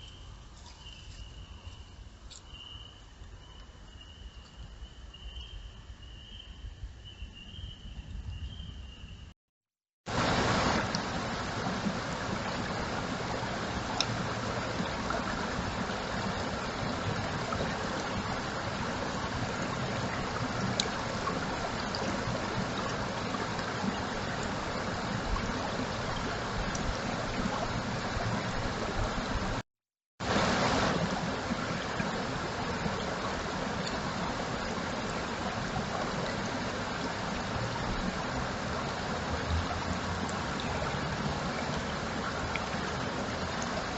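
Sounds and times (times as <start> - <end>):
flowing water rushing: 10.1 - 29.6, 30.2 - 43.9.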